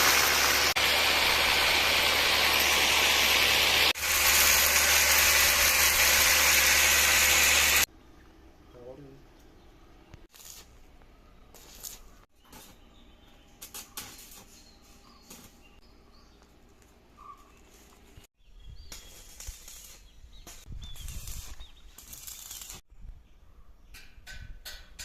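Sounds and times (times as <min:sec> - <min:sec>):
arc welding crackling: 0:00.0 - 0:07.9, 0:10.2 - 0:12.8, 0:13.6 - 0:15.6, 0:18.8 - 0:22.9
faint bird chirps: 0:17.1 - 0:19.3.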